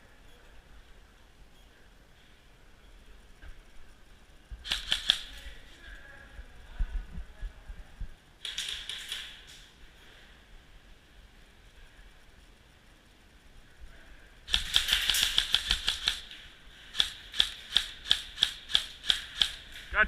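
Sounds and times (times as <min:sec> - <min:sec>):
airsoft gun firing: 0:04.6 - 0:05.4, 0:08.4 - 0:09.6, 0:14.5 - 0:19.8.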